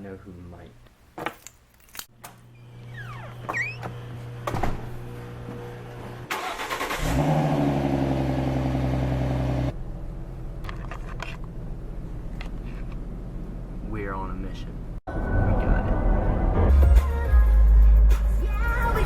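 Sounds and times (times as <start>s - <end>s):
car engine starting and running: 6.2s - 10.8s.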